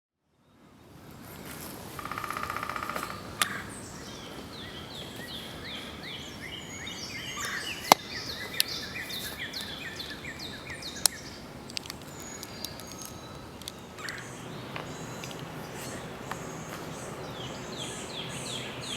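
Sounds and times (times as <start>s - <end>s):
outdoor background noise: 0.2s - 18.9s
birds chirping: 2.0s - 18.9s
sharp clicks: 11.0s - 15.5s.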